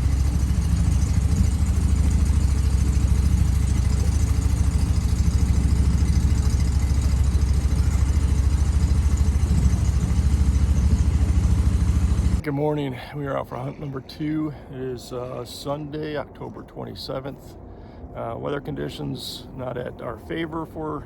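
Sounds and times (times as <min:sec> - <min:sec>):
engine running with even pulsing: 0:00.0 - 0:12.4.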